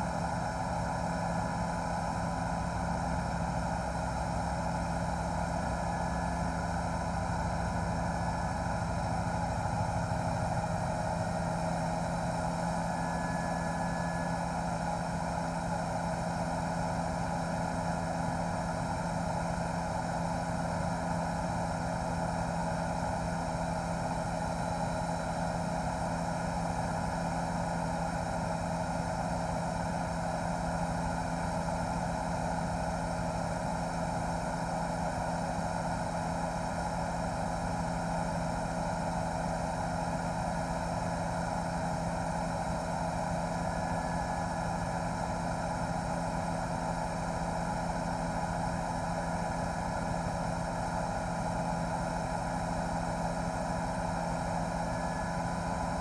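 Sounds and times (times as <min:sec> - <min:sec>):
helicopter engine and rotors: 0:00.0 - 0:56.0.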